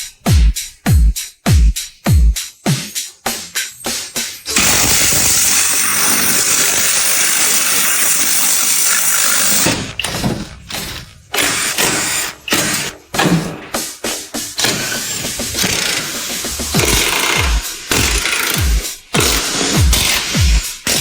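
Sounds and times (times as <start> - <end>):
rhythmic hits: 0.0 - 21.0
loud hissing rush: 14.2 - 21.0.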